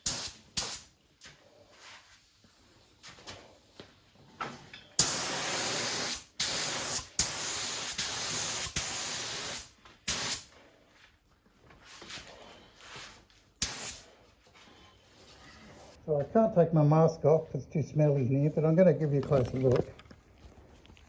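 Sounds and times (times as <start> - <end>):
paint spray gun hissing: 5.0 - 10.5, 13.6 - 14.0.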